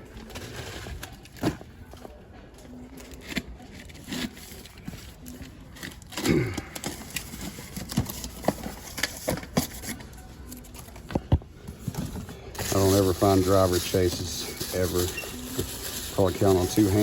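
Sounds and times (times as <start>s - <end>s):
toy packaging clicks and knocks: 5.8s - 10.0s.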